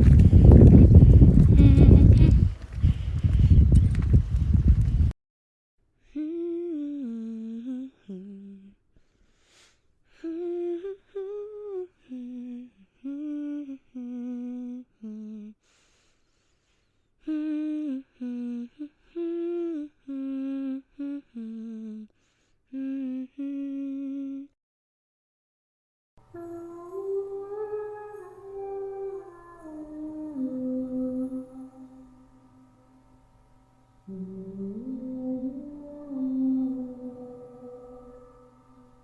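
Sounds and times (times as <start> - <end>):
person humming: 0.0 - 2.6, 6.0 - 8.8, 10.1 - 15.6, 17.2 - 22.1, 22.7 - 24.6, 26.2 - 32.4, 34.1 - 39.0
person breathing: 0.0 - 3.9, 9.0 - 10.4, 15.6 - 17.4, 21.4 - 22.7.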